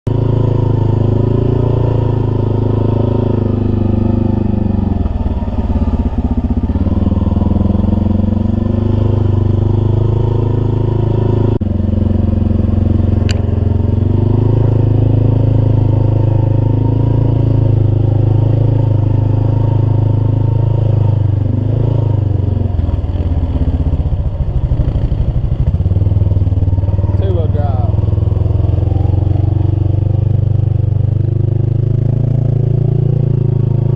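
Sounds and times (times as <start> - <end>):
truck engine revving: 0.1 - 33.9.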